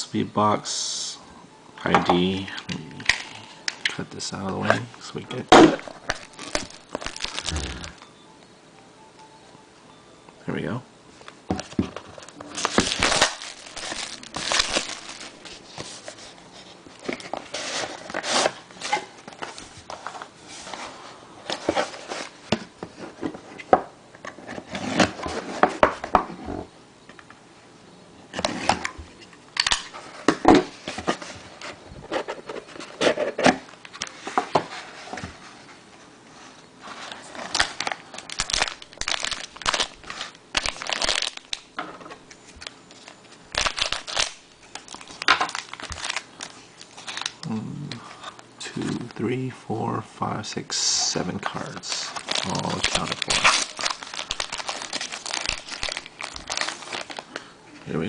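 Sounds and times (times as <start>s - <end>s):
plastic packaging crinkling and tearing: 5.3s - 8.0s, 11.6s - 20.8s, 36.9s - 41.7s, 42.4s - 47.6s, 51.5s - 57.5s.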